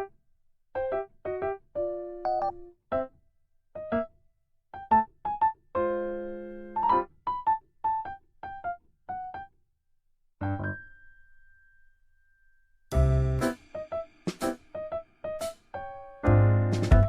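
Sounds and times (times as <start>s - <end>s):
electric piano music: 0.8s - 3.1s, 3.8s - 4.1s, 4.8s - 9.5s, 10.4s - 11.4s, 12.9s - 17.0s.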